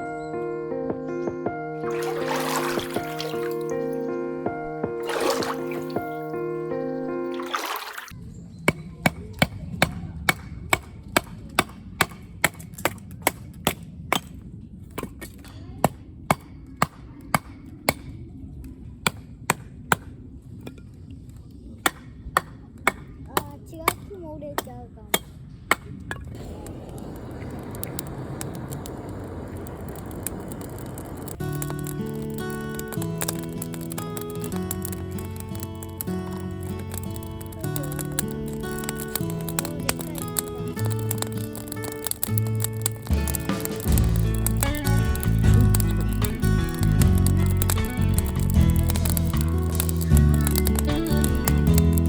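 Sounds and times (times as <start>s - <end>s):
firewood being chopped: 7.4s - 18.1s, 19.0s - 20.2s, 21.8s - 24.0s, 24.6s - 26.3s, 30.5s - 52.0s
steady rushing noise: 26.4s - 31.4s.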